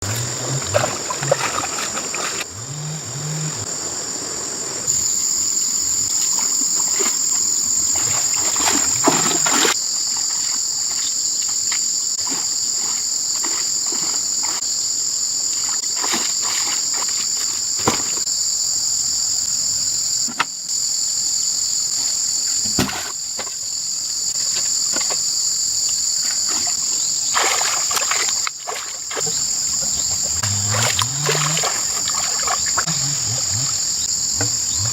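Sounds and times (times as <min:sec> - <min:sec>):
water splashing and sloshing: 0:00.0 - 0:11.1, 0:15.5 - 0:18.3, 0:22.6 - 0:23.6, 0:26.0 - 0:34.9
high-pitched insect chorus: 0:00.0 - 0:34.9.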